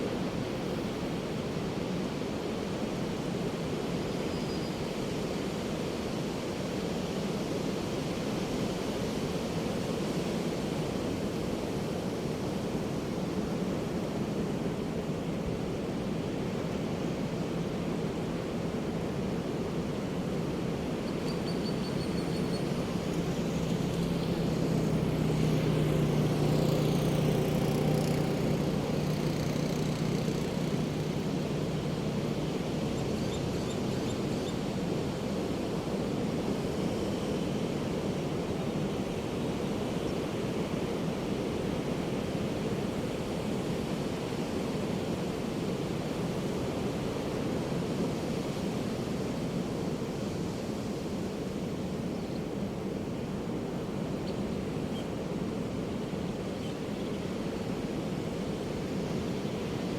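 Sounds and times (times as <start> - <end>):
surf washing on beach: 4.8 - 59.9
low engine hum: 17.8 - 36.0.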